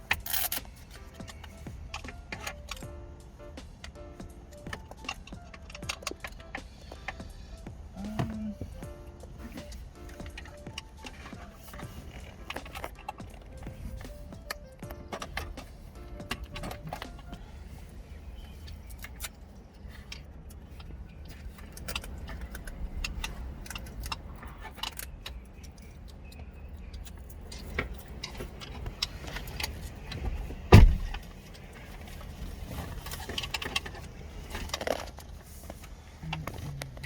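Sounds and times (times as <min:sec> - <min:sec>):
small metallic clicks and rattles: 0:00.0 - 0:02.9, 0:18.6 - 0:30.3, 0:31.0 - 0:37.0.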